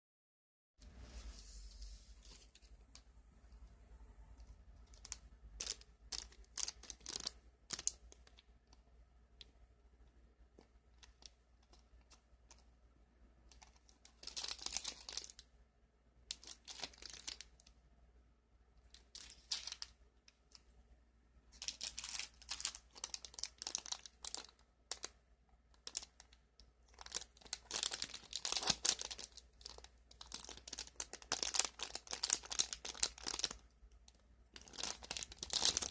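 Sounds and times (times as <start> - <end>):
packaging tearing and crinkling: 27.0 - 33.6, 34.6 - 35.9.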